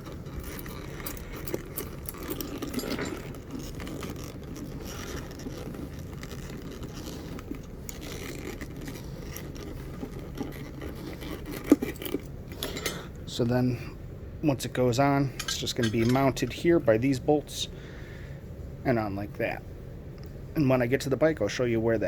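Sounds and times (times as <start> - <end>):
bag and straps rubbing: 0.0 - 12.9.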